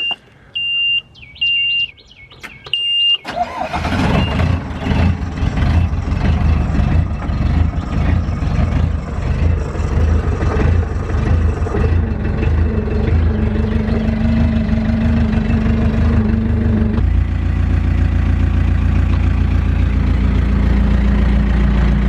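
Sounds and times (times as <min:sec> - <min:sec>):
short beeps: 0:00.0 - 0:03.2
diesel engine cranking and running: 0:02.4 - 0:22.0.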